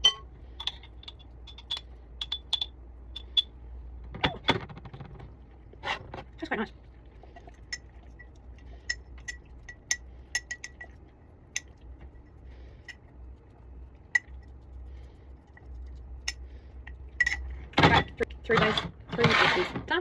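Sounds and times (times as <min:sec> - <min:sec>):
metal spoon clinking on glass jars: 0:00.0 - 0:03.5, 0:17.2 - 0:18.1.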